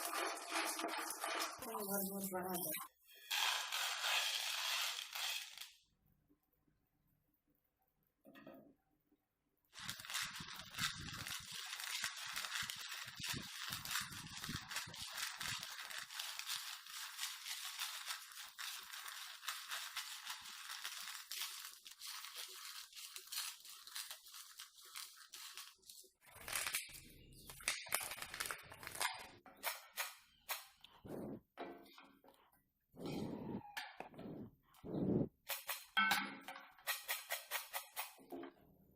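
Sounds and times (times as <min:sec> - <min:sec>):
peanuts rustling crushed by hand: 0:09.8 - 0:29.4.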